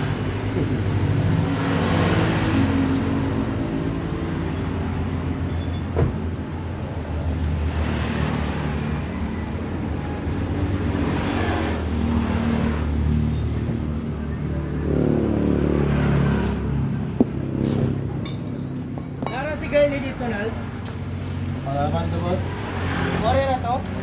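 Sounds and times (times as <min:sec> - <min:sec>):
vehicle engine humming: 0:13.6 - 0:21.6.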